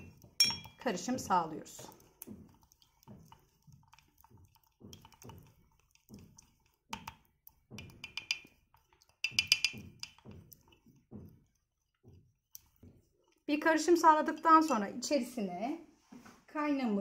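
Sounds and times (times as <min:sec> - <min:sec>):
spoon clinking in a mug: 0:00.0 - 0:00.8, 0:07.8 - 0:10.2.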